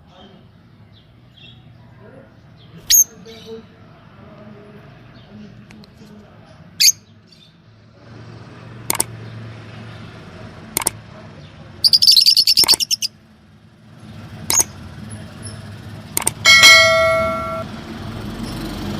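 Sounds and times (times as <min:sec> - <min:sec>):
lovebirds chirping: 0:02.3 - 0:03.7, 0:11.8 - 0:13.2, 0:14.4 - 0:17.6
bird chattering trill: 0:11.8 - 0:13.2, 0:14.5 - 0:14.8
bell-like ring: 0:16.4 - 0:17.7.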